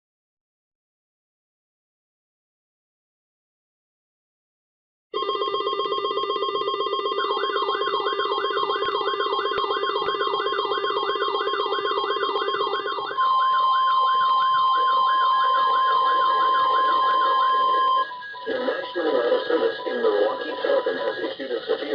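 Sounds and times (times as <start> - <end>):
fast low pulsing beep: 5.2 - 21.9
high steady beeps: 5.2 - 21.9
loud steady alert tone: 5.2 - 21.9.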